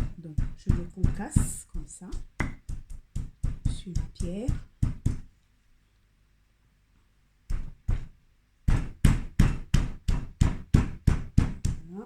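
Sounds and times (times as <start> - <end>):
stone knocking on stone: 0.1 - 5.2.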